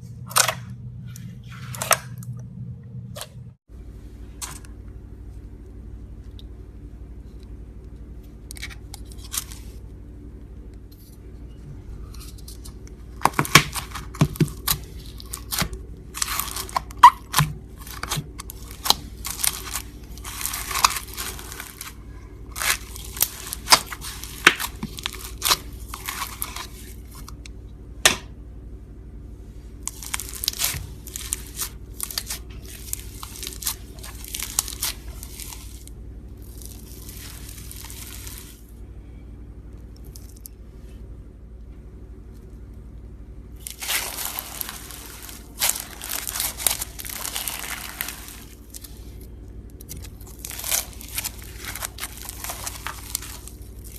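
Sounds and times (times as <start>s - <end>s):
faint steady hum: 0.0s - 53.9s
slime popping and crackling: 13.0s - 27.4s, 29.8s - 38.6s, 43.6s - 53.9s.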